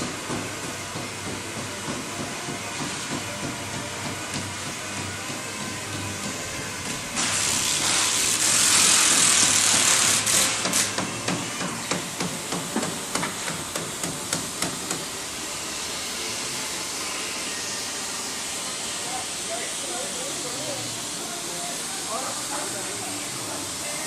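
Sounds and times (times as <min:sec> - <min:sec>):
loud air hiss: 0:12.0 - 0:24.0.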